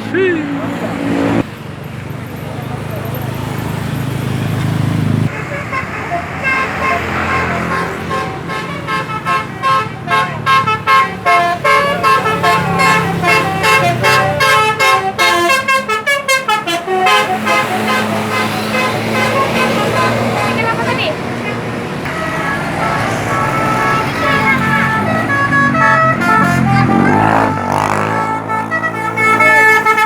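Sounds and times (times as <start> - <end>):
bus engine running: 0.0 - 30.0
multi-tone air horn tune: 5.3 - 21.0, 22.0 - 30.0.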